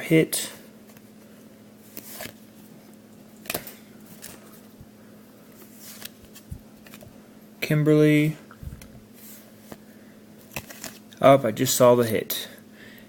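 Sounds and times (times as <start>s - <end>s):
faint steady hum: 0.0s - 13.0s
trading cards rustling: 1.8s - 2.5s, 5.6s - 7.2s, 9.2s - 11.1s.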